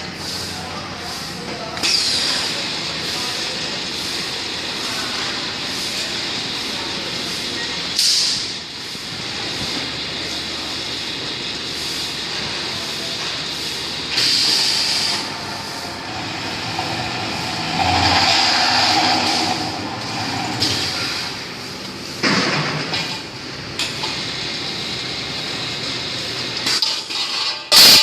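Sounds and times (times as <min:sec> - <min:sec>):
pipe-cutting machine grinding: 0:13.8 - 0:22.0.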